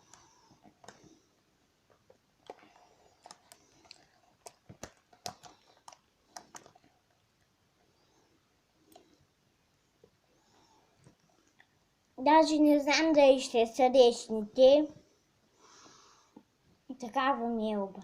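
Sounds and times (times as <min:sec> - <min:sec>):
faint clicks and light knocks: 0:00.0 - 0:08.0.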